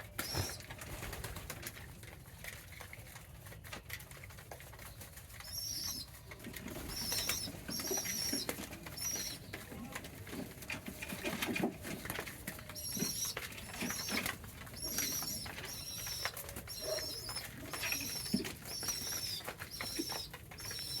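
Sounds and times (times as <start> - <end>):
pigeons cooing: 5.4 - 21.0.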